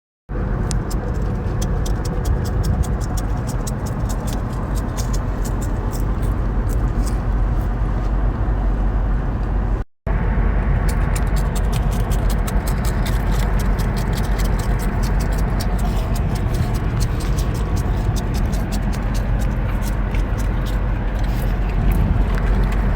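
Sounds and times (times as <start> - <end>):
steady low rumble: 0.3 - 22.9
crispy snack crunching: 10.9 - 22.9.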